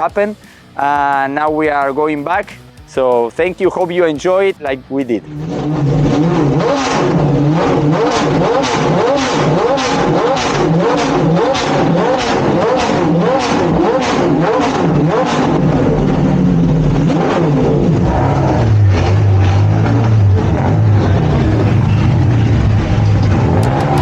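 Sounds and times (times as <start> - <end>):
car engine revving: 5.1 - 24.0.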